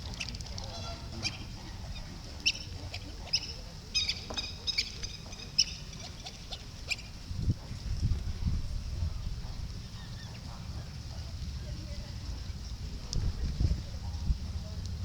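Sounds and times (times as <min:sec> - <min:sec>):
small birds chirping: 0:00.0 - 0:07.2
steady low rumble: 0:06.6 - 0:15.0.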